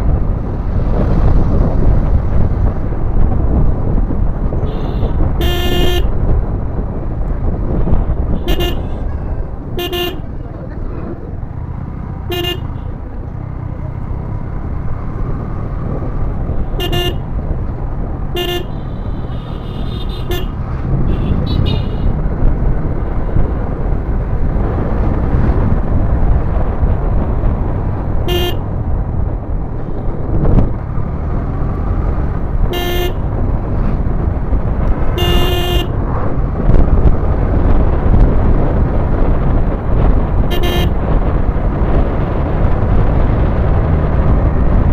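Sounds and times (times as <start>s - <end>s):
wind noise: 0.0s - 44.9s
horn toots: 4.6s - 6.1s, 8.3s - 10.3s, 12.3s - 12.9s, 16.6s - 17.3s, 18.3s - 22.2s, 28.2s - 28.6s, 32.7s - 33.2s, 35.1s - 36.0s, 40.5s - 41.0s.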